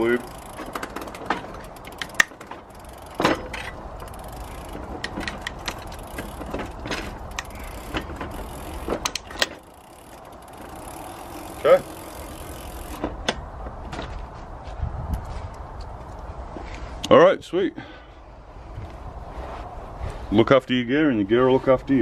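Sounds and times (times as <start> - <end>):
bicycle chain clicking onto cogs: 0.0 - 13.2.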